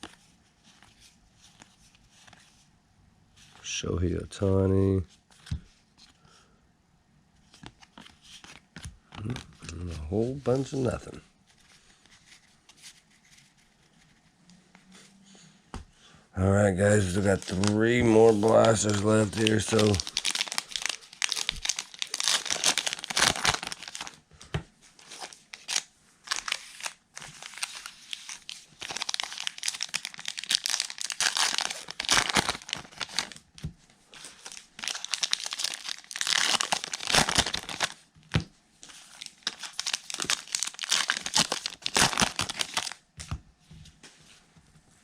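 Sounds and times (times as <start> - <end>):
plastic wrapping crinkling and tearing: 16.8 - 24.2, 25.0 - 38.0, 38.8 - 43.0.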